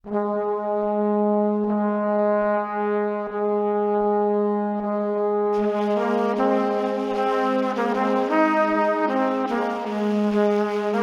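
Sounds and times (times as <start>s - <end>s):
long held brass-like note: 4.6s - 11.0s.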